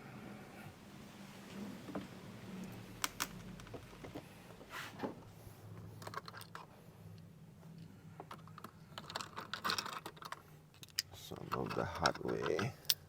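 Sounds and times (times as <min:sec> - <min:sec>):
plastic and metal parts clicking: 0:03.0 - 0:04.2, 0:06.0 - 0:06.7, 0:07.8 - 0:13.0
small parts scraping: 0:07.7 - 0:13.0.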